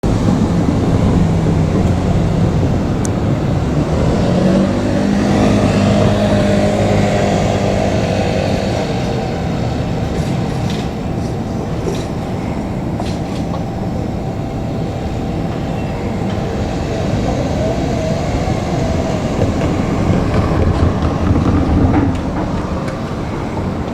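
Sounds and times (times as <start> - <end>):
electric train passing: 0.0 - 23.9.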